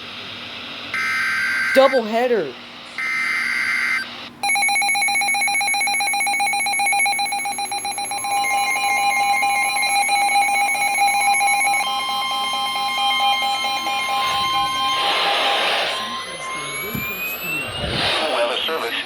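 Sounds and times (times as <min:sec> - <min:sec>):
higher steady alert tone: 0:15.9 - 0:18.2
two-pitch alert tone: 0:16.0 - 0:18.0.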